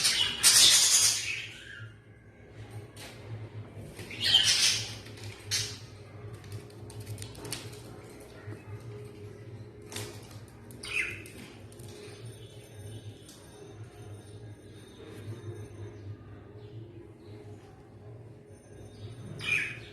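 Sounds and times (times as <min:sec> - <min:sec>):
scratchy bird chatter: 0:04.0 - 0:13.5.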